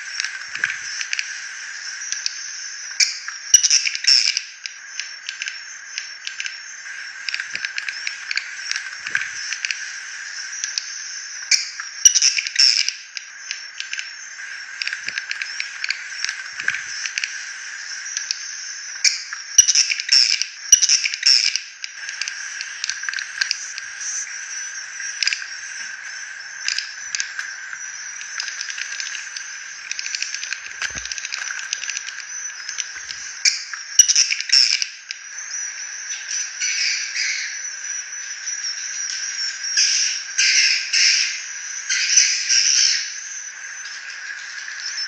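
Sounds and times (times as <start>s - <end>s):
raspy twittering bird chirps: 0.0s - 4.4s, 14.2s - 45.0s.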